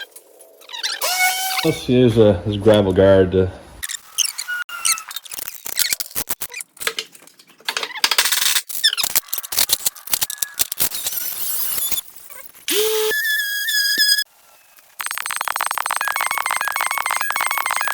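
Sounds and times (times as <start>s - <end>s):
high chirping squeaks: 0.6s - 1.9s, 3.8s - 5.9s, 12.7s - 14.3s.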